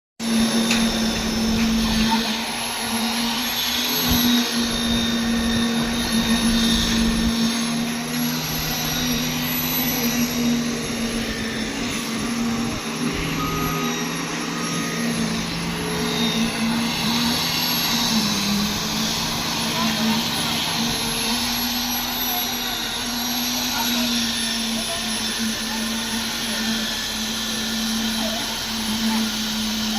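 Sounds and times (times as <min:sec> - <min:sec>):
faint high whine: 0:04.0 - 0:18.0.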